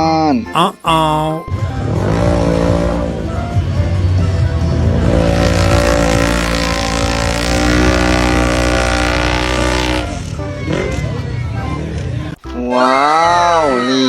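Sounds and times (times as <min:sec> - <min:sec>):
vehicle engine running: 0:01.5 - 0:11.7.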